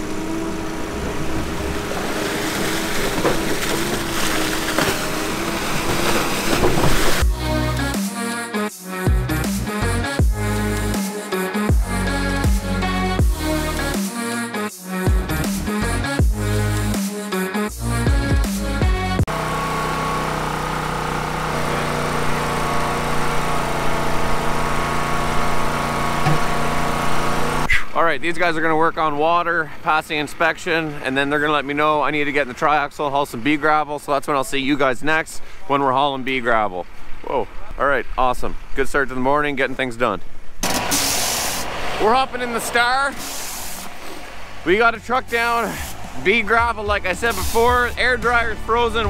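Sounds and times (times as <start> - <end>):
diesel engine running with whine: 0.0 - 8.0, 9.1 - 14.0, 17.7 - 27.7, 40.6 - 49.0
sharp knocks: 26.2 - 26.6.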